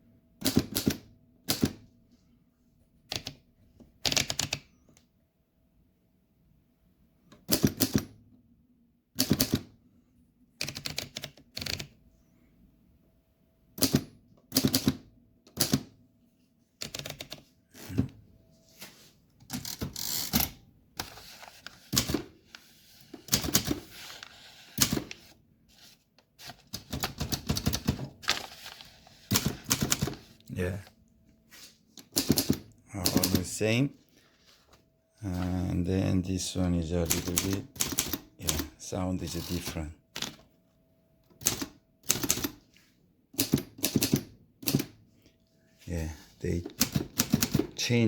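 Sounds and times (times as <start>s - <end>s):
typewriter keystrokes: 0.4s - 1.8s, 3.1s - 3.4s, 4.0s - 4.6s, 7.3s - 8.2s, 9.2s - 9.7s, 10.6s - 11.9s, 13.8s - 15.9s, 16.8s - 18.0s, 21.9s - 22.3s, 23.3s - 23.9s, 24.8s - 25.3s, 26.7s - 28.5s, 29.3s - 30.3s, 32.0s - 33.6s, 37.0s - 38.7s, 39.4s - 40.4s, 41.4s - 42.6s, 43.4s - 45.0s, 46.6s - 47.8s.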